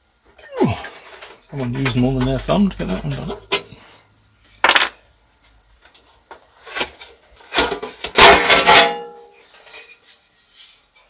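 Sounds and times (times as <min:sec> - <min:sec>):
knocks and clatter of metal parts: 0:06.6 - 0:09.9.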